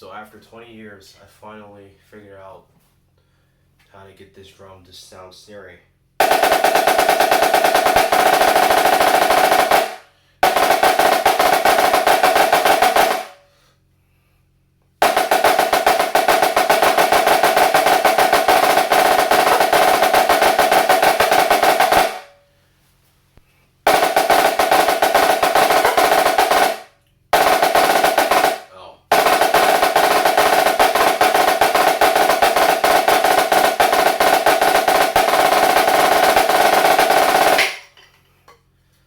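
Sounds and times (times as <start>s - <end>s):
snare drum rolls: 6.2s - 13.4s, 15.0s - 22.4s, 23.9s - 37.9s.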